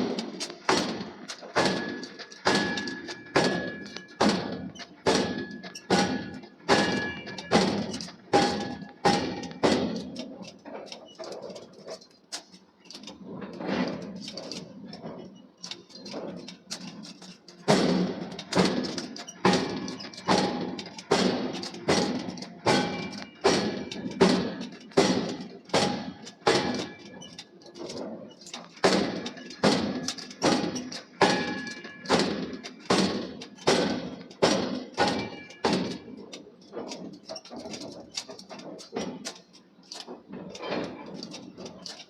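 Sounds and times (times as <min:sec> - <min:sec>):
forging hammer striking hot steel: 0:00.0 - 0:10.7, 0:17.6 - 0:37.5.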